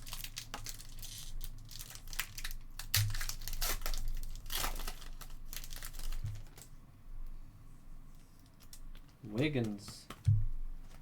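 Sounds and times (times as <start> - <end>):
pack wrappers crinkling: 0.0 - 6.7.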